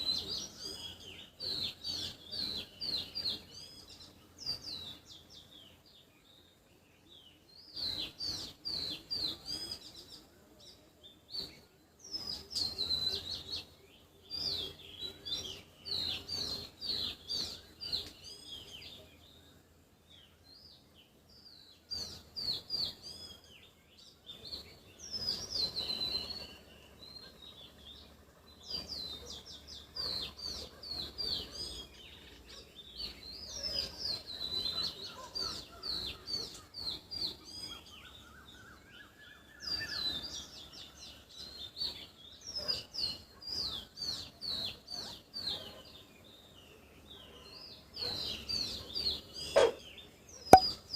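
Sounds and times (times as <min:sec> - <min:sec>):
birds chirping: 0:00.0 - 0:50.9.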